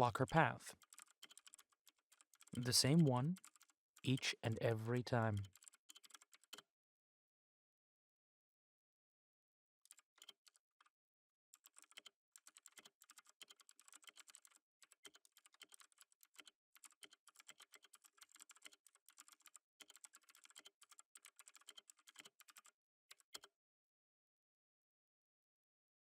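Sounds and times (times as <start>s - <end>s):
typing on computer keyboard: 0.7s - 4.6s, 5.2s - 6.6s, 9.9s - 10.6s, 11.6s - 23.5s.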